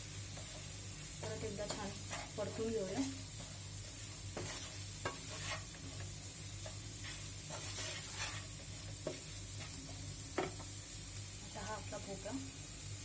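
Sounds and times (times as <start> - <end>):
onions sizzling in oil: 0.0 - 13.0
spatula scraping a pan: 1.6 - 10.6.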